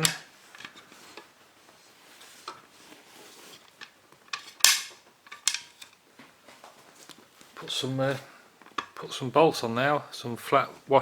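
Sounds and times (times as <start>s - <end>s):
metal bolts and nuts clinking: 3.6s - 6.0s.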